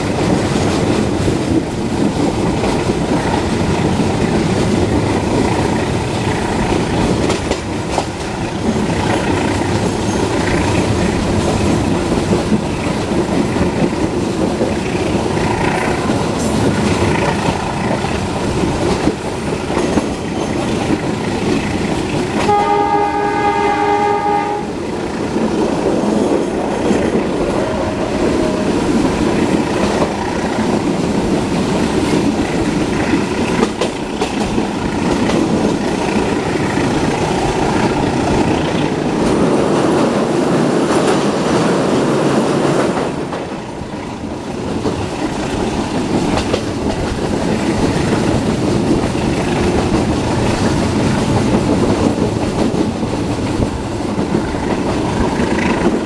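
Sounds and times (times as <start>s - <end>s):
train rumbling on rails: 0.0s - 56.0s
train horn: 22.4s - 24.8s, 27.5s - 28.7s.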